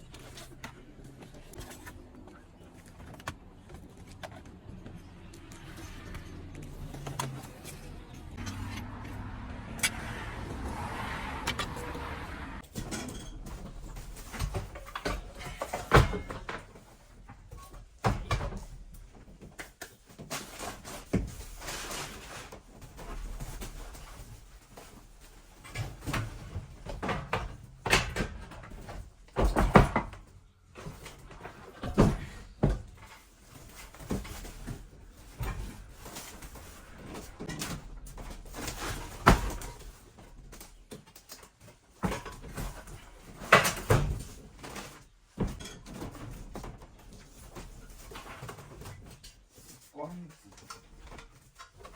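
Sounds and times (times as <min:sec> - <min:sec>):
hard objects knocking and clunking: 0:25.6 - 0:49.4.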